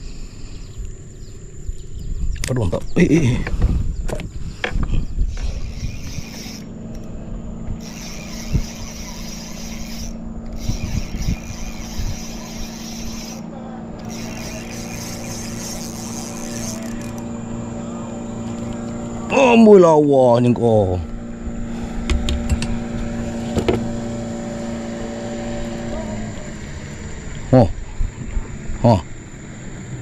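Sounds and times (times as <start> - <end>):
motor running steadily: 2.9 - 30.0
high hiss: 5.3 - 7.1.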